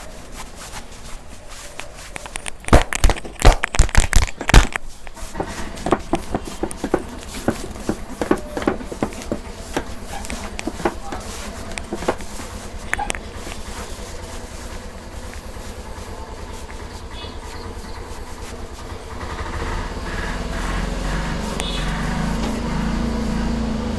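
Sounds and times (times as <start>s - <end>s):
hands patting on body: 0.0s - 19.4s
low steady rumble: 4.8s - 23.8s.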